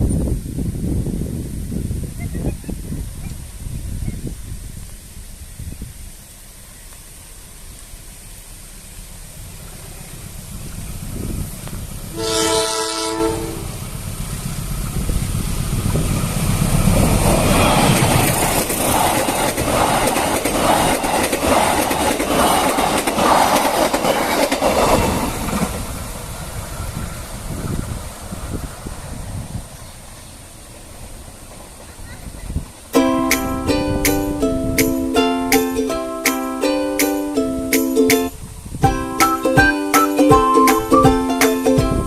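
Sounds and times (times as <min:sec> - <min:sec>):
train passing rumble: 0:00.0 - 0:39.6
diesel train horn: 0:12.1 - 0:13.9
wheels clacking over rail joints: 0:13.6 - 0:28.2, 0:29.8 - 0:42.0.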